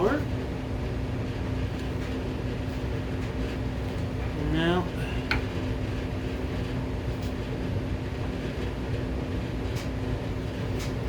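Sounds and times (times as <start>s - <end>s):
constant hum: 0.0s - 11.0s.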